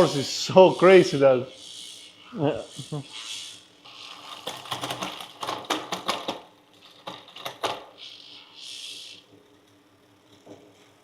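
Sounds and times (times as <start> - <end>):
bike drivetrain clicking: 4.0 - 7.9.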